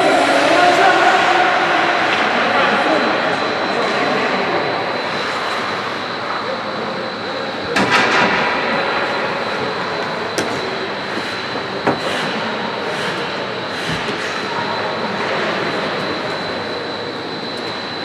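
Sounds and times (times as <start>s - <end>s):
steady rush of rink noise: 0.0s - 13.2s
faint high whine: 0.0s - 18.0s.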